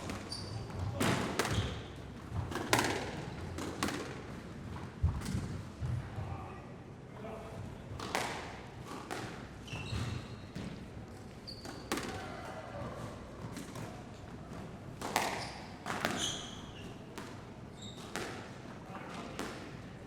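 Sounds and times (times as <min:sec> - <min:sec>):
balls bouncing on hall floor: 0:00.0 - 0:06.4, 0:08.0 - 0:19.8.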